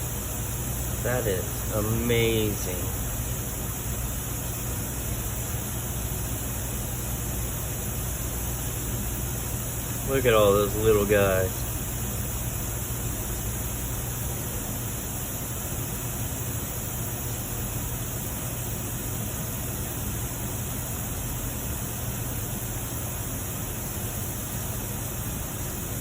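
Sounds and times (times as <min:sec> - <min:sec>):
steady hiss: 0:00.0 - 0:26.0.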